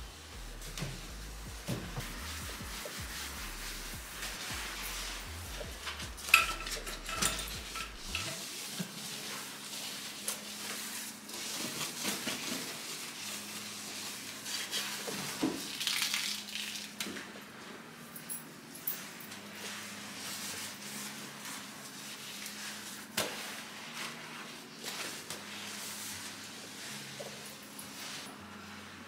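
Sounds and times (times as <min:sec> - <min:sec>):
scraping and rubbing dishes: 0:00.5 - 0:09.6
dishes and utensils clinking: 0:05.8 - 0:08.4.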